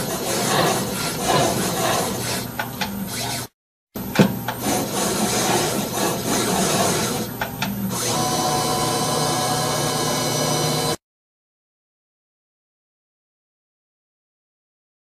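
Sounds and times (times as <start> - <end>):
engraver cutting metal: 0.0 - 3.6, 4.5 - 11.0.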